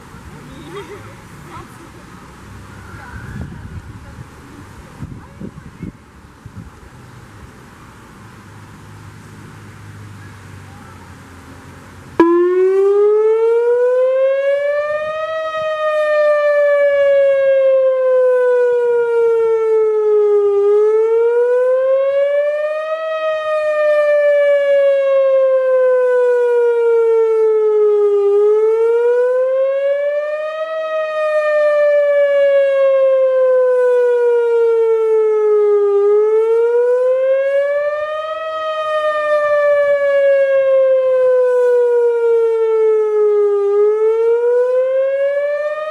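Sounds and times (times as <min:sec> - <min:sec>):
warning siren wailing: 0:01.6 - 0:04.0, 0:12.2 - 0:45.9.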